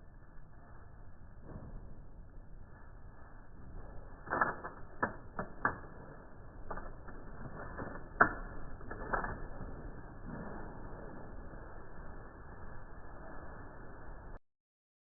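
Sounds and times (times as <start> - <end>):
clicks and knocks: 4.2 - 10.7.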